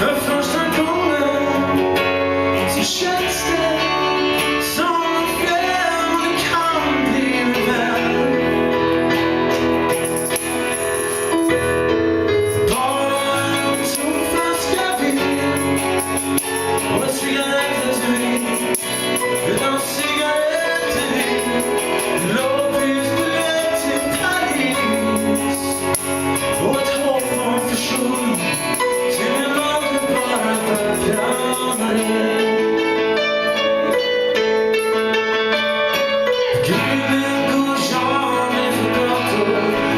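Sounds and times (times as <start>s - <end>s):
band playing live with singing: 0.0s - 39.9s
high jingling percussion: 9.9s - 11.8s, 12.5s - 32.2s.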